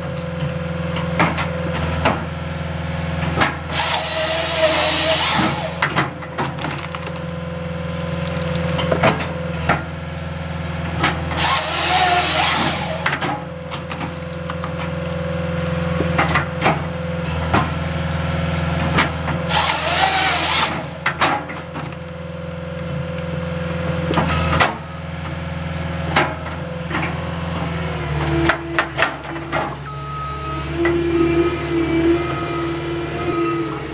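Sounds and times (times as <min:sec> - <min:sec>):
skid steer engine under load: 0:00.0 - 0:33.9
wood knocking and cracking: 0:05.8 - 0:09.3.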